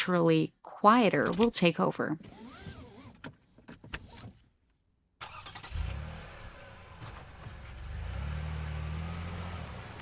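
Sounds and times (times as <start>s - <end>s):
car engine starting and droning: 5.2s - 10.0s.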